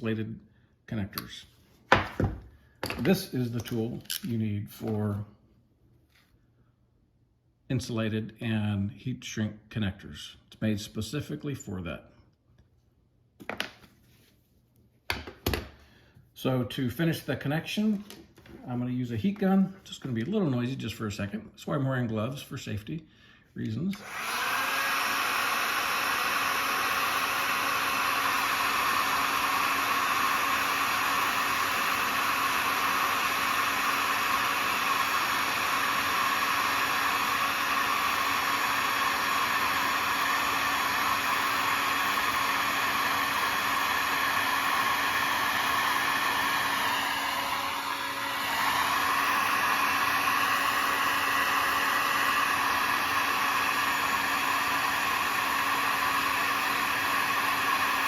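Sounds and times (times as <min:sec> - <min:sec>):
heat gun blowing: 0:23.9 - 0:58.0.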